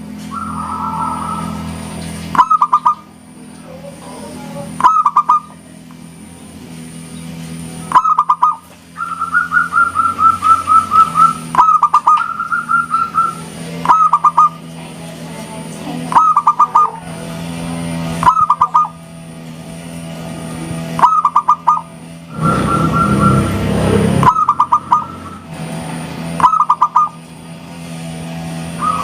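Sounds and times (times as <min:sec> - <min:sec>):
dove cooing: 0:00.3 - 0:05.6, 0:07.9 - 0:14.6, 0:15.9 - 0:19.0, 0:21.0 - 0:25.6, 0:26.4 - 0:27.2.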